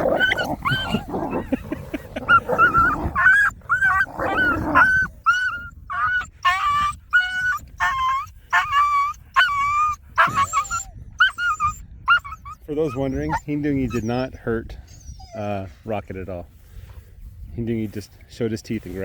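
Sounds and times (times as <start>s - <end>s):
dog whining high-pitched: 0.0s - 1.4s, 2.3s - 14.1s, 14.9s - 15.4s
dogs snarling scuffle: 0.0s - 10.8s
dog growling: 0.0s - 14.1s.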